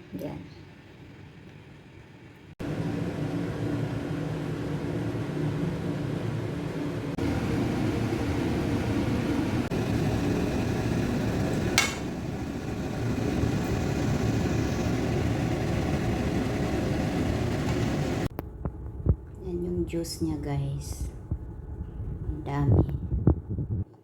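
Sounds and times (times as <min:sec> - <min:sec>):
pot steaming: 0:02.7 - 0:18.3.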